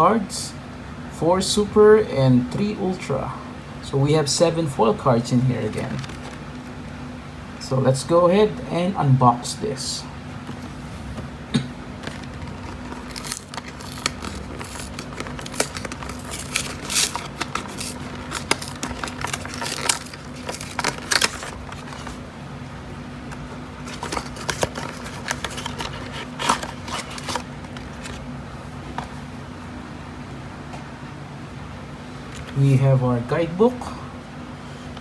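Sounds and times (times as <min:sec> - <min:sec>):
steady low hum: 0:00.0 - 0:35.0
packaging clicks and crinkles: 0:05.8 - 0:06.4, 0:12.0 - 0:22.2, 0:23.8 - 0:28.2.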